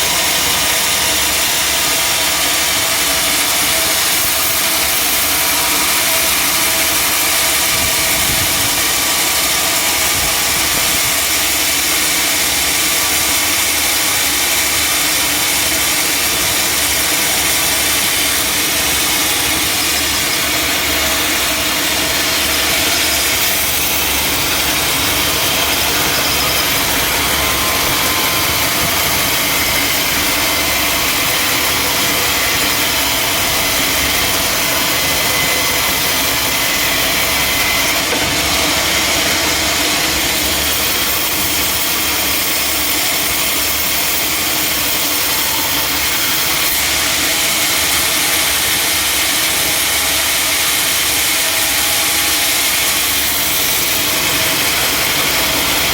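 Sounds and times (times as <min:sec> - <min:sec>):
sawmill machinery drone: 0:00.0 - 0:55.9.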